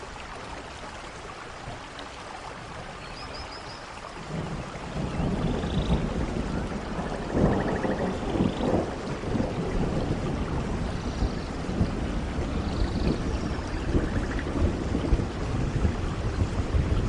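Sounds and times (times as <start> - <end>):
steady rain falling: 0.0 - 17.0
thunder rumbling: 4.2 - 17.0.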